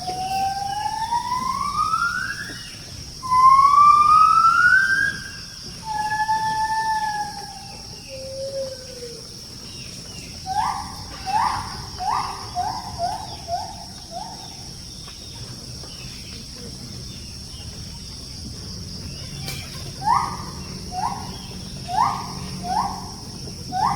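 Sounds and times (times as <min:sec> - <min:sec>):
gibbon singing: 0:00.0 - 0:08.8, 0:10.4 - 0:14.7, 0:19.6 - 0:23.9
high insect drone: 0:00.0 - 0:23.9.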